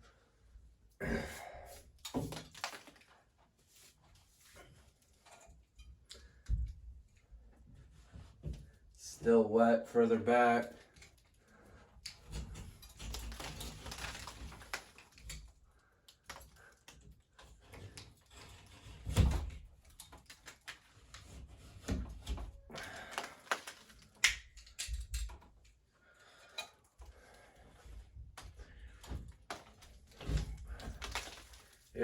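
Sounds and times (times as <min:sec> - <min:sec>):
scraping and tearing wet drywall: 0:10.8 - 0:25.4, 0:27.1 - 0:32.0.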